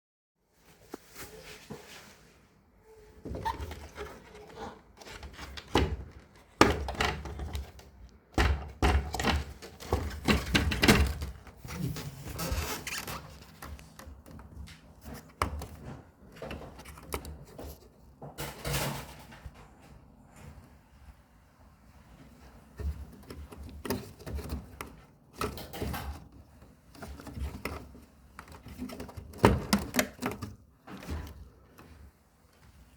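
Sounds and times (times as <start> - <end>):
plastic clicks knocks and scraping: 3.3 - 11.6, 12.3 - 19.3, 22.8 - 32.0.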